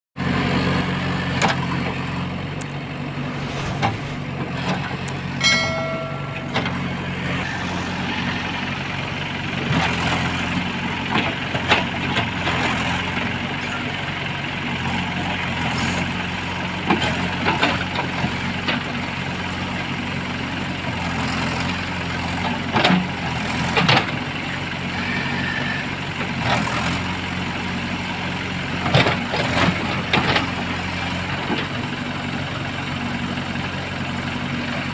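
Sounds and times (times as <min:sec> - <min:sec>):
diesel engine running: 0:00.2 - 0:34.9
metal knocks and clanks: 0:03.8 - 0:07.1
brief pitched tone: 0:05.4 - 0:07.6.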